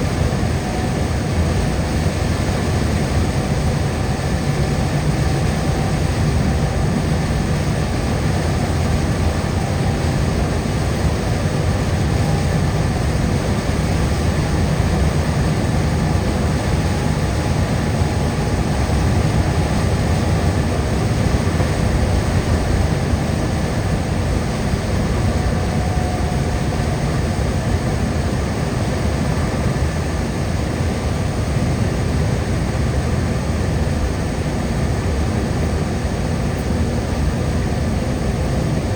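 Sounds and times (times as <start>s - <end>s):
car tyres and engine rumble: 0.1s - 29.8s.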